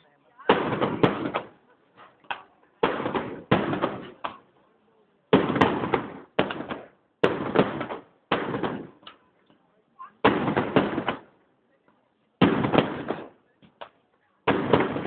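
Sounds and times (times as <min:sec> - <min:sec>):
loud firework bangs: 0:00.4 - 0:04.4, 0:05.3 - 0:09.1, 0:10.2 - 0:11.3, 0:12.4 - 0:13.4, 0:14.4 - 0:15.0.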